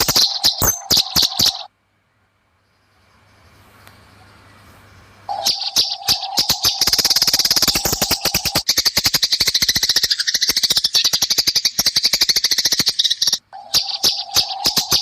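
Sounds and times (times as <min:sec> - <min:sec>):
sparrows chattering harsh chirps: 0:00.0 - 0:01.7, 0:02.7 - 0:15.0.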